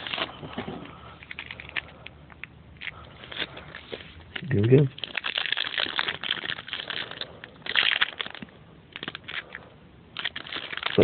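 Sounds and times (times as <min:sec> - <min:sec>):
foil wrapper tearing and crinkling: 0:00.0 - 0:00.5, 0:02.8 - 0:09.6, 0:10.2 - 0:11.0.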